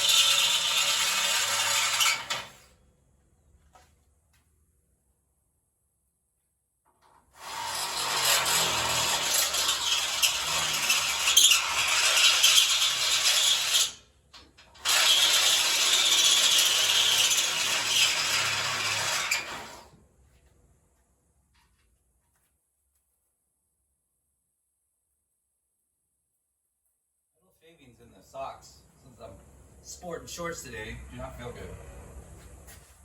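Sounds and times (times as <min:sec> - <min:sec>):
power drill drilling through steel: 0:00.0 - 0:02.6, 0:07.4 - 0:14.0, 0:14.8 - 0:19.9.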